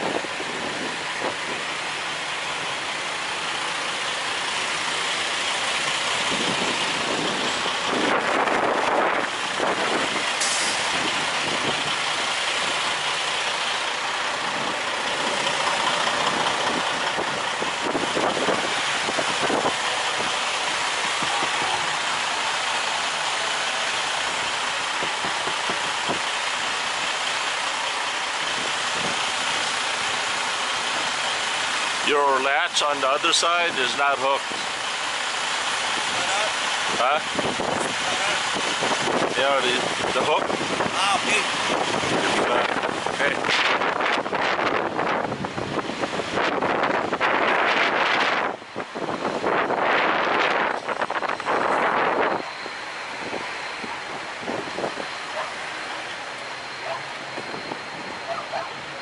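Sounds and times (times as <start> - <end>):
wind noise on microphone: 0.0 - 2.0, 5.8 - 13.0, 14.3 - 22.1, 23.7 - 26.8, 28.4 - 30.3, 36.8 - 55.5, 56.8 - 59.0
trucks idling and moving: 0.0 - 59.0.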